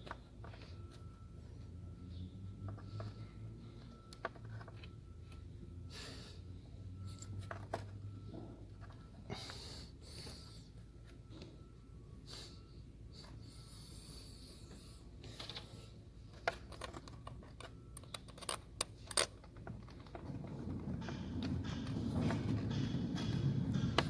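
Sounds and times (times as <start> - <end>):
hand tools clicking and tapping: 16.3 - 24.0
low rumbling noise: 20.0 - 24.0.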